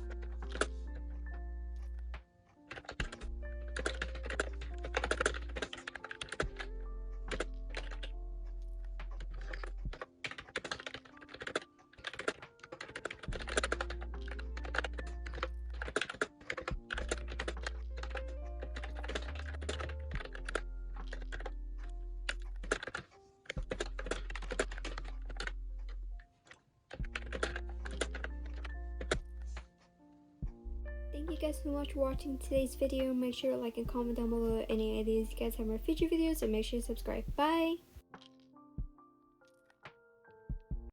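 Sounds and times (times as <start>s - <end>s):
background music with bass: 0.0s - 2.2s, 3.0s - 5.7s, 27.0s - 29.7s, 33.8s - 37.8s.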